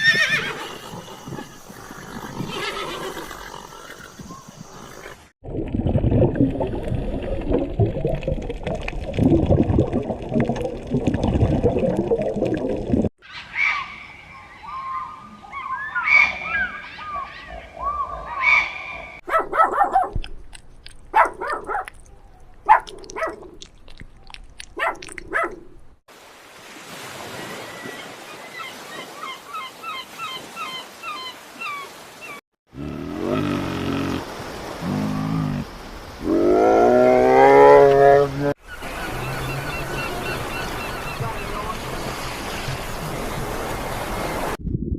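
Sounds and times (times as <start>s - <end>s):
whistling animal calls: 13.3s - 19.2s
long low animal call: 32.8s - 41.5s.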